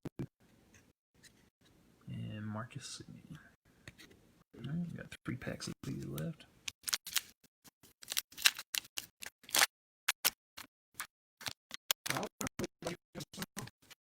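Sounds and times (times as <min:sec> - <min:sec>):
cards crinkling and clicking: 0:05.9 - 0:10.4.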